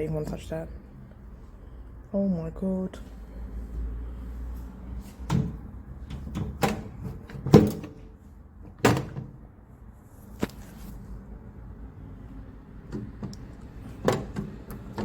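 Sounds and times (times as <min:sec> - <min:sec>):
microwave snaps and clunks: 0:05.3 - 0:08.0, 0:08.7 - 0:09.4, 0:14.0 - 0:15.0.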